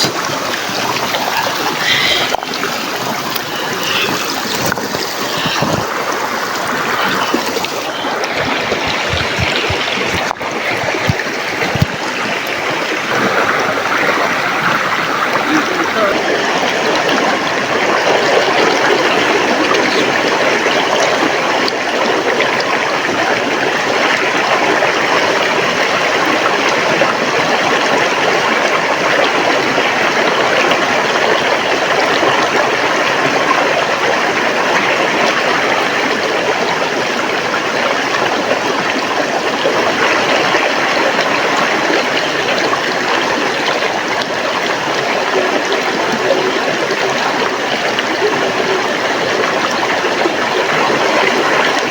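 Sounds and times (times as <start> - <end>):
river water rushing over rocks: 0.0 - 51.9.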